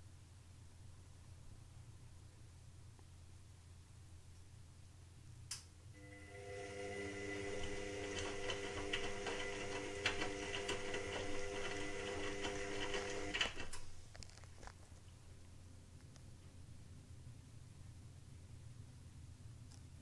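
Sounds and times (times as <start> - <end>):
washing machine humming: 6.0 - 14.0.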